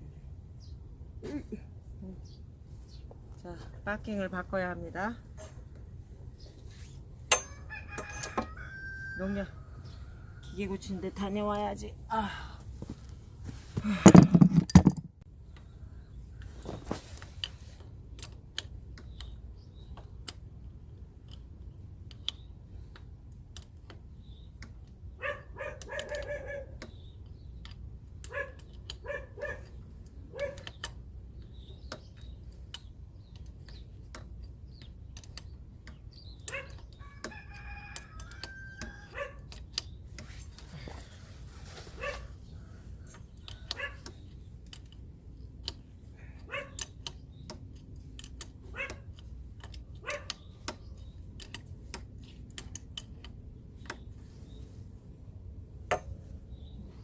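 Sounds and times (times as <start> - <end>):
rooster crowing: 7.4 - 10.7, 37.0 - 39.4
small clicks: 16.4 - 25.0, 25.8 - 40.7, 43.0 - 54.3.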